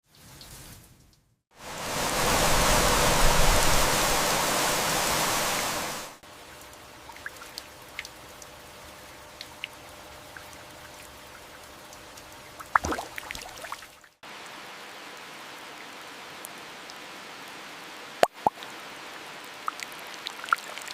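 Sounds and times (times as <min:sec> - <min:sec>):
light rain: 0:00.0 - 0:20.9
heavy rain: 0:01.6 - 0:06.2, 0:14.2 - 0:20.9.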